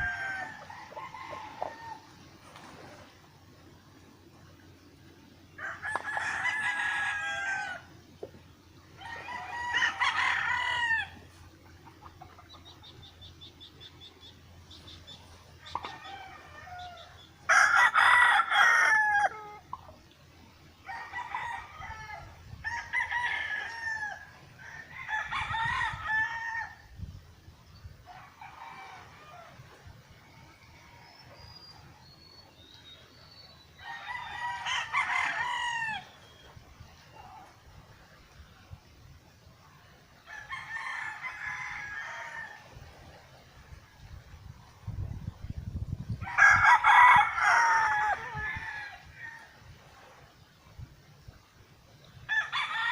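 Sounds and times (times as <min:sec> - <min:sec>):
rooster crowing: 0:00.0 - 0:02.1, 0:05.6 - 0:07.9, 0:09.0 - 0:11.3, 0:15.8 - 0:19.6, 0:20.8 - 0:26.9, 0:33.8 - 0:36.2, 0:40.2 - 0:42.7, 0:46.2 - 0:49.6, 0:52.3 - 0:52.9.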